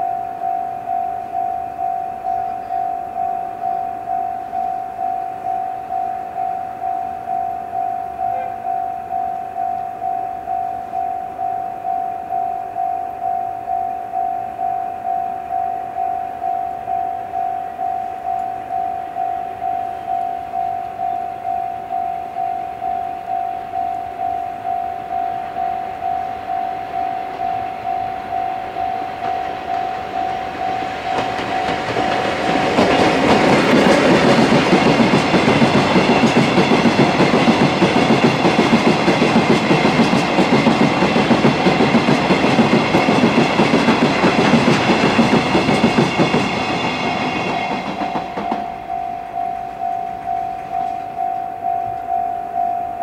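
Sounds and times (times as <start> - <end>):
level-crossing alarm ding: 0.0 - 33.0, 44.9 - 53.0
train wheels clacking: 26.4 - 52.1.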